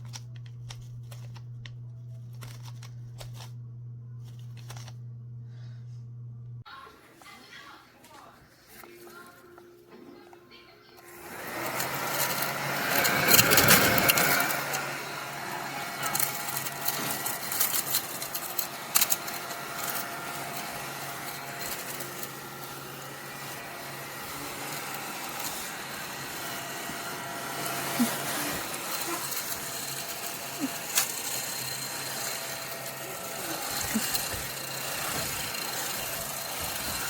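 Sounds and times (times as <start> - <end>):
small vacuum motor humming: 8.8 - 37.0
loud rustling: 11.1 - 37.0.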